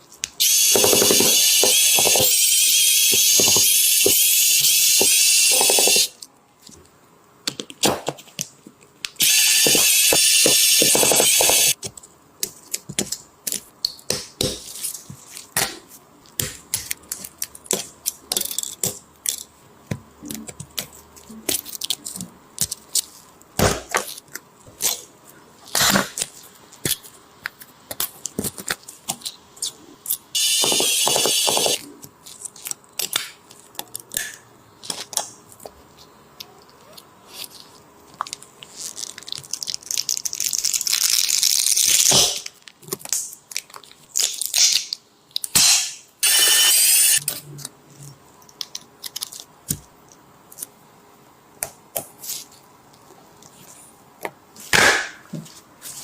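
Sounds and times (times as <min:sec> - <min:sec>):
hissing or tearing noises: 0:36.8 - 0:45.0.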